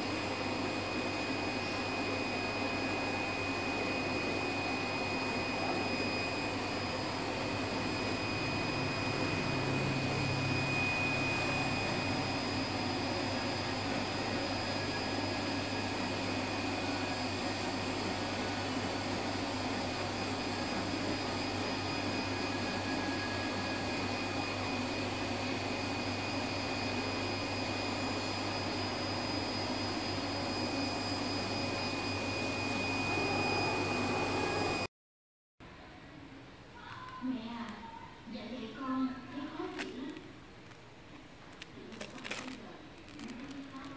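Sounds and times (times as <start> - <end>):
cutting machine motor hum: 0.0 - 34.9
thin high whine: 0.0 - 34.9.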